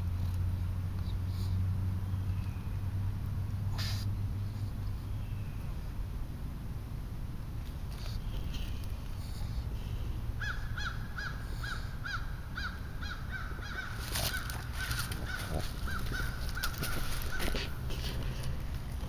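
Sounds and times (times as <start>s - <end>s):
low wind rumble: 0.0s - 19.0s
frogs clucking: 10.4s - 18.9s.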